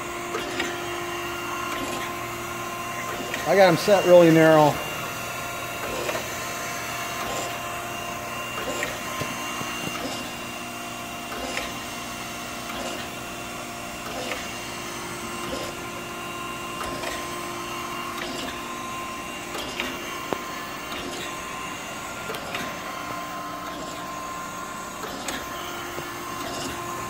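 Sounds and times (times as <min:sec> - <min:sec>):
machine pump and motor hum: 0:00.0 - 0:27.0.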